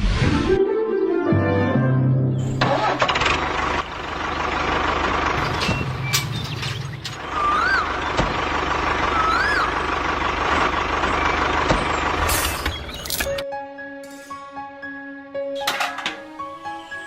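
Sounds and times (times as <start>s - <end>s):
small engine humming: 2.7s - 13.3s.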